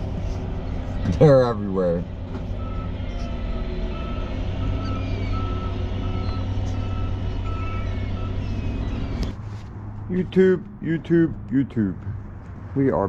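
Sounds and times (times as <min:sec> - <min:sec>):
low engine rumble: 0:00.0 - 0:13.0
vehicle reverse alarm beeping: 0:02.5 - 0:09.3
seagull calls: 0:02.6 - 0:09.4.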